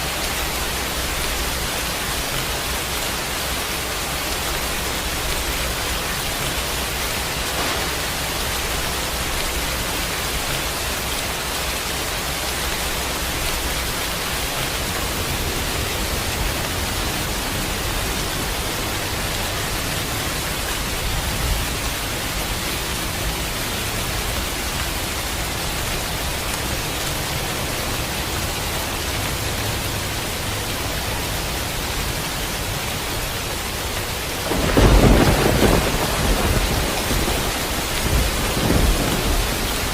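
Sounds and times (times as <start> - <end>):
steady rain: 0.0 - 39.9
thunder rumble: 5.0 - 11.0, 34.4 - 39.9.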